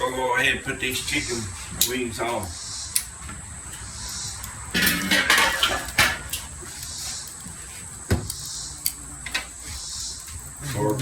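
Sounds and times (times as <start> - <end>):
chicken sizzling on a grill: 3.6 - 11.0
metal clattering and knocking: 4.7 - 6.3.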